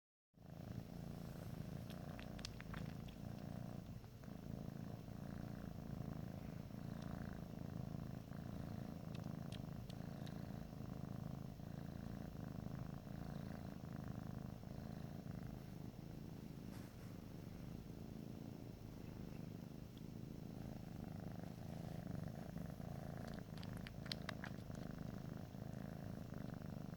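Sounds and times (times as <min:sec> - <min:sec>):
cat purring: 0:00.4 - 0:26.9
faint clicks: 0:01.8 - 0:04.0, 0:09.0 - 0:10.6, 0:23.0 - 0:25.4.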